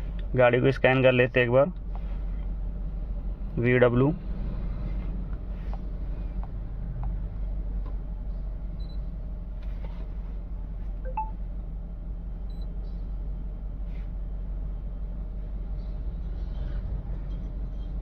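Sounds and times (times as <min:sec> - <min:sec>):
faint short high beeps: 0:11.1 - 0:11.4.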